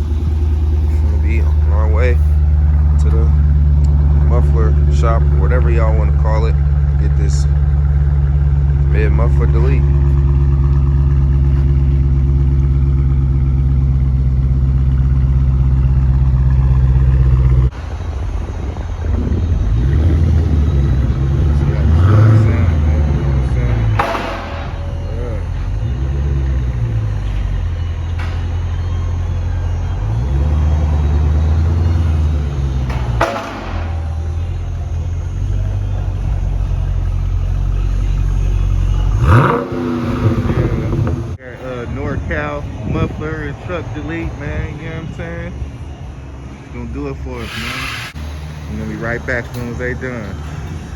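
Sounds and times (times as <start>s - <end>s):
car engine idling: 0.0s - 50.9s
rough engine sound: 0.0s - 50.9s.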